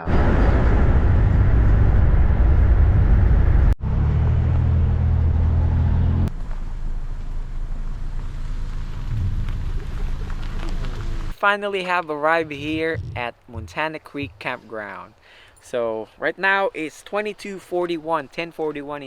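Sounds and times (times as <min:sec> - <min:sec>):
car engine and road rumble: 0:00.8 - 0:11.4, 0:12.5 - 0:14.4.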